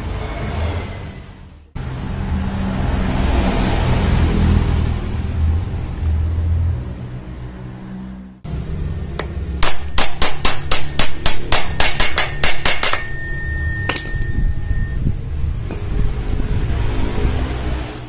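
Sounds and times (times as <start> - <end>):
thin ringing tone: 5.9 - 6.4, 11.7 - 15.4
hammer striking metal: 8.6 - 15.0.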